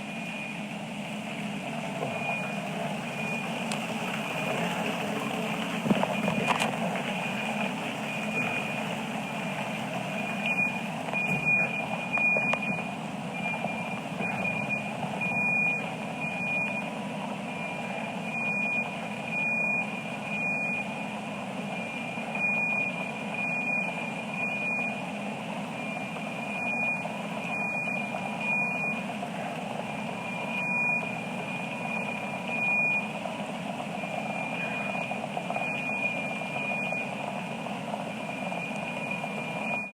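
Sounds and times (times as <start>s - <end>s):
high-pitched electronic alarm tone: 2.0s - 3.5s, 34.0s - 37.2s.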